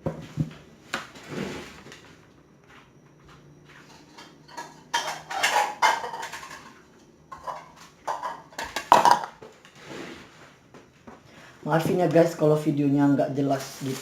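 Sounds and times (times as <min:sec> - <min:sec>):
utensils and dishes clattering: 0:03.8 - 0:09.4.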